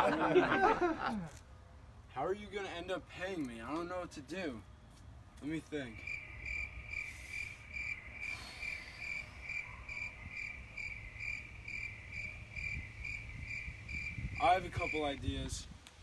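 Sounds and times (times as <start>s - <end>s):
crickets chirping: 5.8s - 15.5s.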